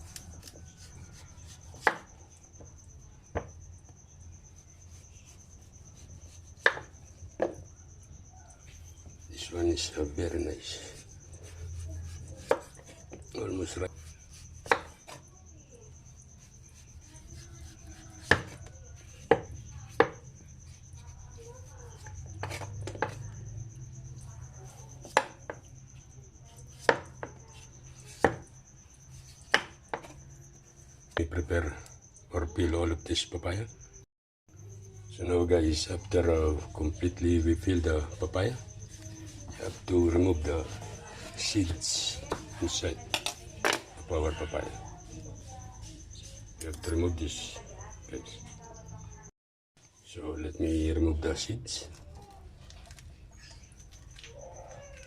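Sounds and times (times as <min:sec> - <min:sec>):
knife knocking on fruit and board: 0:01.7 - 0:02.7, 0:06.6 - 0:07.6, 0:14.4 - 0:15.2, 0:18.2 - 0:20.2, 0:22.4 - 0:23.2, 0:26.8 - 0:28.5, 0:29.4 - 0:30.2.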